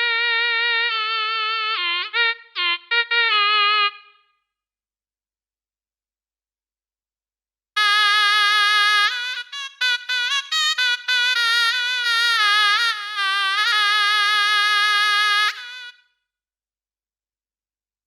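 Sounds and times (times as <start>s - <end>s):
wind instrument melody: 0.0s - 4.4s, 7.8s - 16.1s.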